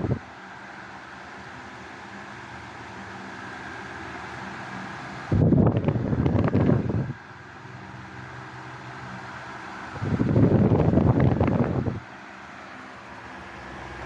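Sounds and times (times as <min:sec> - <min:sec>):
electric fan motor hum: 0:00.0 - 0:14.0
wind buffeting microphone: 0:05.3 - 0:07.2, 0:09.9 - 0:12.0.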